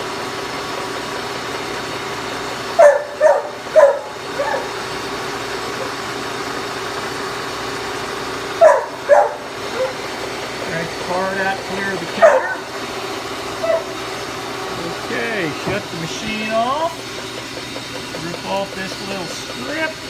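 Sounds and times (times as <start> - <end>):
milling machine running: 0.0 - 20.0
dog barking: 2.8 - 4.9, 8.6 - 10.1, 12.1 - 12.8, 13.6 - 14.0.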